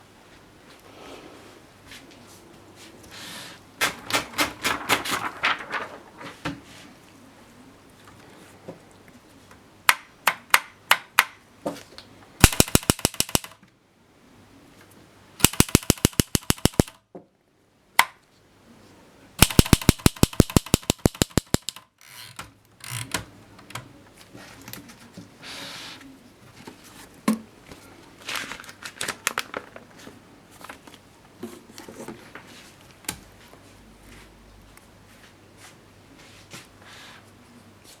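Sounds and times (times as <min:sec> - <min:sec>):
typewriter keys clacking: 0:12.4 - 0:13.6, 0:15.4 - 0:17.0, 0:19.4 - 0:21.8.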